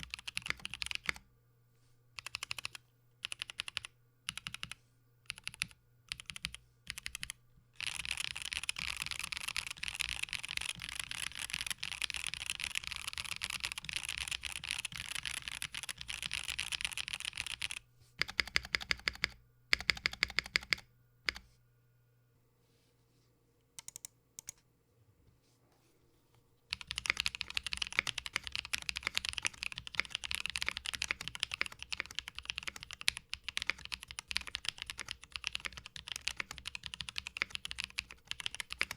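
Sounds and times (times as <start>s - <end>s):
mechanical keyboard typing: 0.0s - 1.2s, 2.2s - 21.4s, 23.8s - 24.6s, 26.7s - 38.9s.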